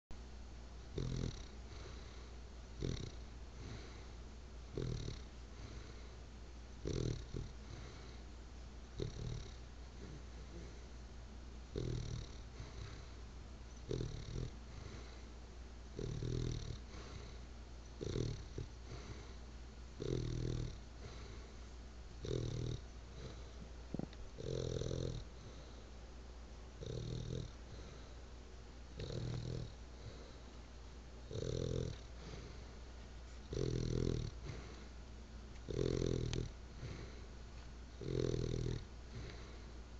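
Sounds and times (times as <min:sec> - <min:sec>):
dog snoring: 0:00.9 - 0:06.1, 0:06.8 - 0:08.2, 0:08.9 - 0:10.9, 0:11.7 - 0:13.2, 0:13.8 - 0:15.2, 0:15.9 - 0:19.4, 0:20.0 - 0:21.6, 0:22.2 - 0:25.8, 0:26.8 - 0:28.2, 0:28.9 - 0:30.4, 0:31.2 - 0:32.7, 0:33.4 - 0:34.9, 0:35.6 - 0:37.3, 0:37.9 - 0:39.6.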